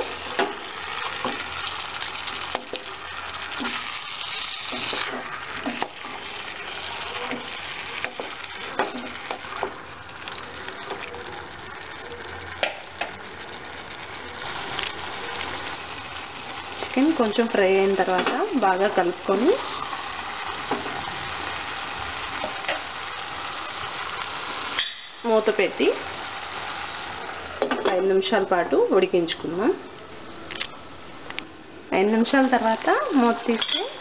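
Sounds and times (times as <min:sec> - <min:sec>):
chicken sizzling in a pan: 0:00.0 - 0:28.3, 0:32.0 - 0:34.0.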